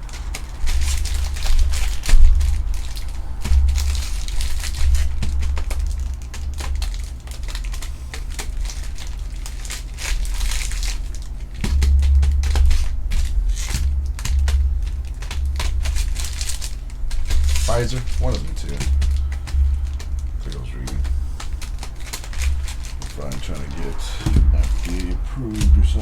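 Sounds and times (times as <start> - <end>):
sharp clicks and snaps: 0.0 - 26.0
wrappers crinkling: 0.0 - 26.0
low rumble: 11.1 - 26.0.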